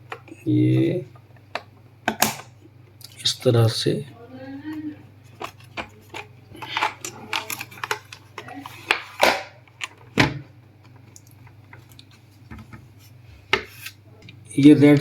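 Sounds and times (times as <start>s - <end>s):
faint handling of plastic: 4.5s - 10.2s
plastic keyboard parts clicking: 5.4s - 9.0s.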